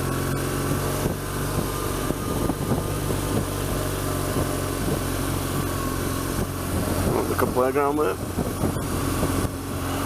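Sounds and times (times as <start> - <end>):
motorcycle engine running: 0.0 - 10.0.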